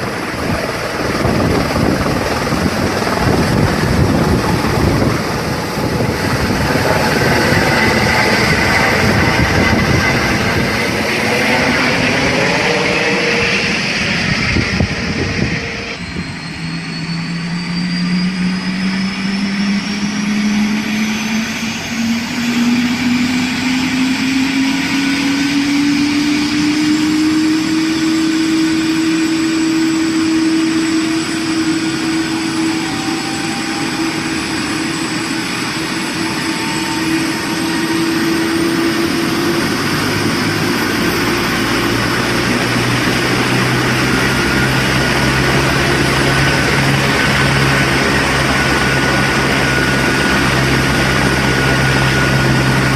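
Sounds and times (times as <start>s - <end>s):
engine whine rising in pitch: 0.0s - 52.9s
helicopter rotor and engine: 0.0s - 52.9s.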